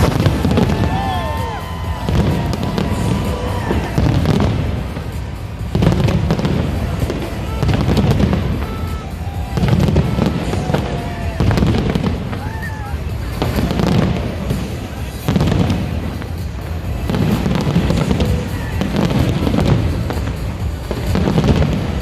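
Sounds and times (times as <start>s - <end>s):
fireworks booming and crackling: 0.0s - 22.0s.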